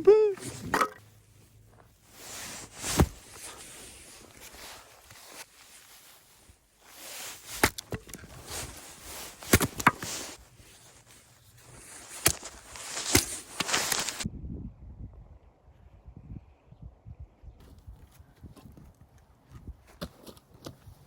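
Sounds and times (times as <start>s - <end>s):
wood rustling and scraping: 0.4s - 14.3s.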